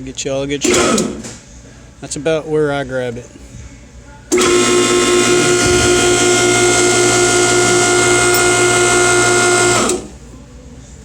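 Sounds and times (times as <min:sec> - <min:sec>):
hydraulic pump whining: 0:00.6 - 0:01.4, 0:04.3 - 0:10.2.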